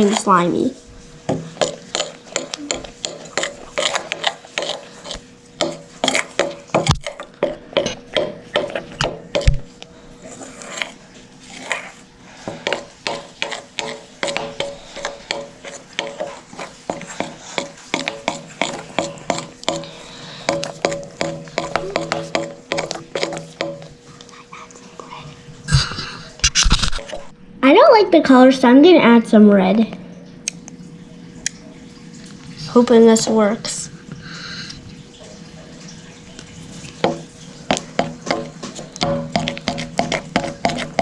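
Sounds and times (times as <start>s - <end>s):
spoon scraping and knocking bowl: 1.3s - 9.6s, 10.5s - 23.9s, 37.0s - 41.0s.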